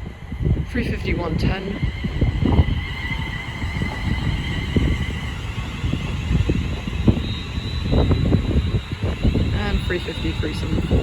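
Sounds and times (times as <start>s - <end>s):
electric train whine: 0.0s - 11.0s.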